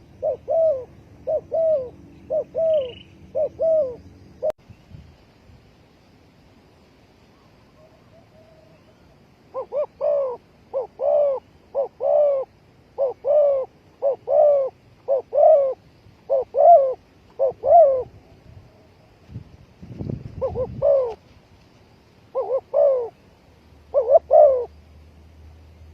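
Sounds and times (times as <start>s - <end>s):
dove cooing: 0.0s - 4.5s, 7.8s - 18.3s, 20.4s - 21.2s, 22.3s - 23.2s, 23.9s - 24.8s.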